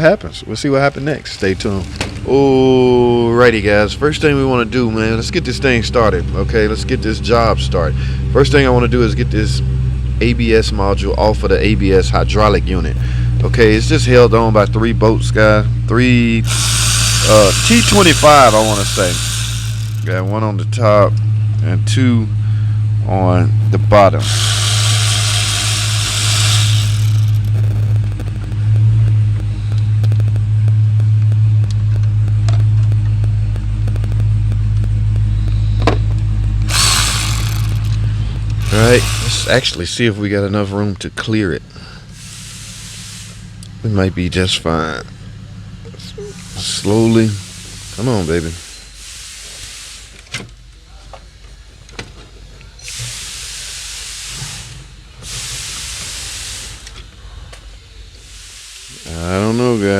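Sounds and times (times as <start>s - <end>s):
steady low hum: 15.3s - 40.1s
pressurised air jet hissing: 16.4s - 20.2s, 24.2s - 27.6s, 38.6s - 39.8s
tools clicking: 16.4s - 20.3s, 24.2s - 28.2s, 36.7s - 38.0s, 38.6s - 39.8s.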